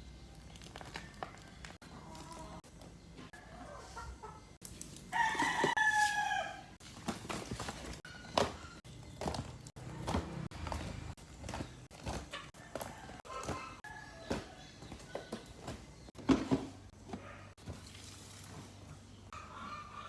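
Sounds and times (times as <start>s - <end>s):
paper squishies rustling: 0.3s - 2.7s, 4.6s - 16.1s
rooster crowing: 5.1s - 6.8s, 12.6s - 14.6s.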